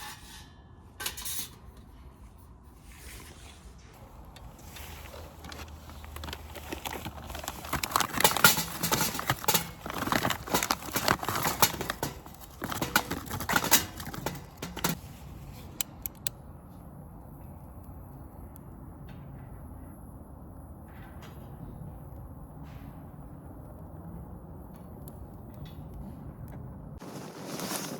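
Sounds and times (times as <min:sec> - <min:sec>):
charcoal clattering on a grill: 0:04.8 - 0:15.0.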